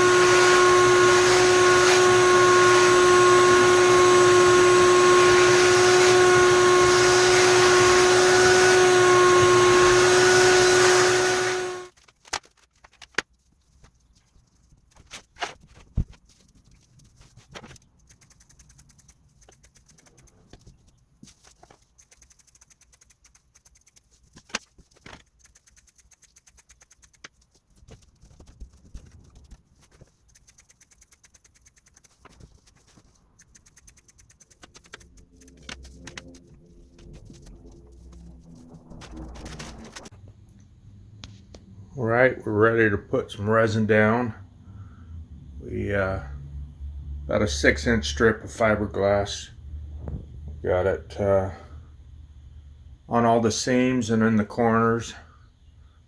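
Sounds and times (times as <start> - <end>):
shop vacuum whining: 0.0 - 11.9.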